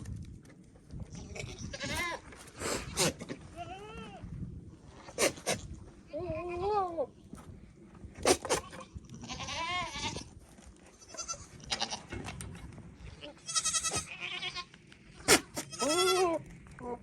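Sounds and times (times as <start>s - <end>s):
goats bleating: 8.6s - 10.3s, 11.0s - 12.1s, 13.2s - 14.7s, 15.6s - 16.4s.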